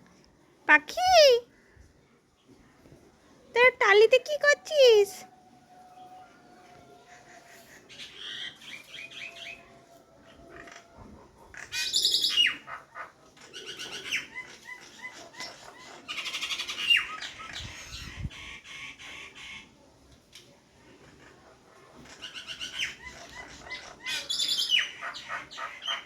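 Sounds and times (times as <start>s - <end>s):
bird chirping and chattering: 11.6s - 19.6s, 22.0s - 26.0s.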